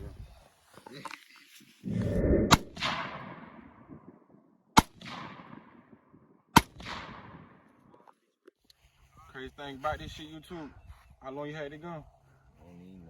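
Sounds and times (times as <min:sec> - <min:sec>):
gunshots with echo: 0:02.5 - 0:04.2, 0:04.8 - 0:07.7.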